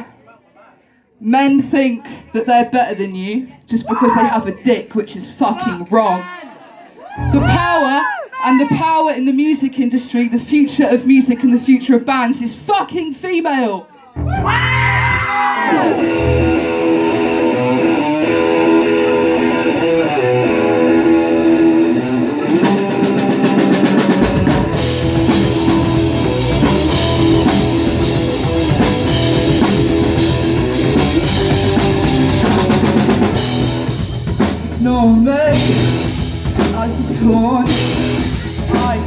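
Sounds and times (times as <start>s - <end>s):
guitar chords: 7.2s - 7.7s, 15.7s - 39.0s
drums and bass: 7.2s - 7.8s, 14.2s - 39.0s
rock band playing: 7.2s - 7.8s, 14.2s - 39.0s.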